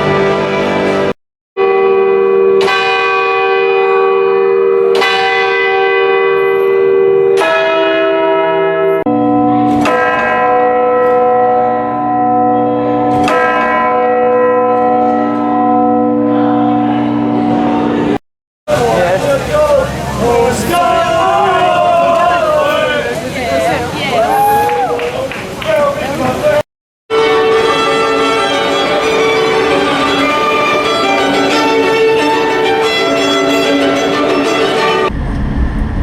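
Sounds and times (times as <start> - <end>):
deeper church bell ringing: 0.0 - 18.2, 27.1 - 35.2
higher church bell ringing: 0.0 - 18.2, 27.1 - 35.1.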